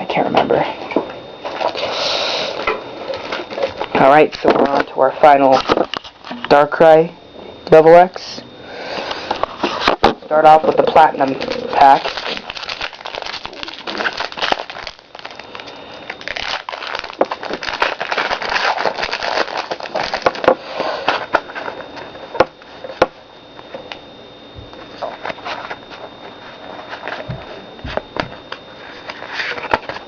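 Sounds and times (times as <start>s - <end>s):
foil wrapper crinkling: 9.1s - 22.1s.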